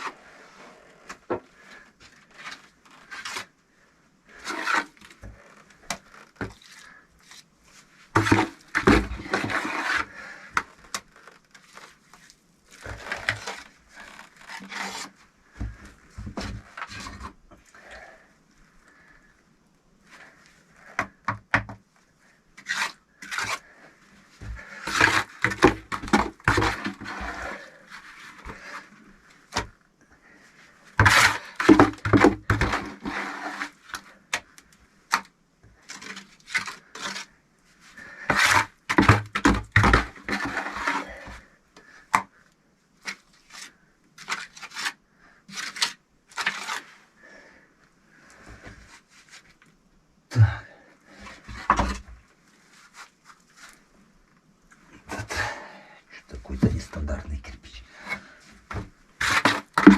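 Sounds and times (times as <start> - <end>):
scraping and knocking on bricks: 8.1 - 12.0, 12.8 - 17.4, 24.4 - 28.9, 30.9 - 34.5, 38.0 - 41.5, 51.2 - 52.2, 58.0 - 59.9.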